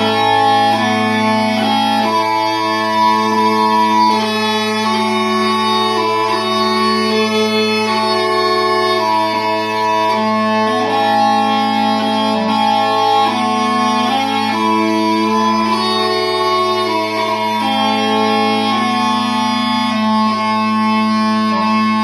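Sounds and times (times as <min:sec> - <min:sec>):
smallpipes playing a tune: 0:00.0 - 0:22.0.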